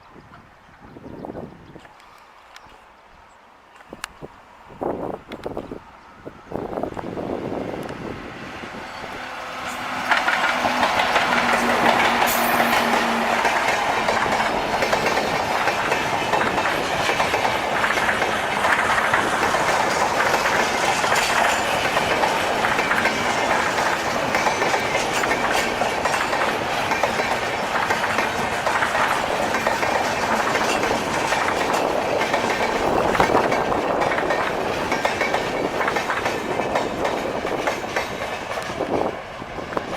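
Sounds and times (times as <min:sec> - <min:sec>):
train wheels clicking over rail joints: 0:09.4 - 0:39.9.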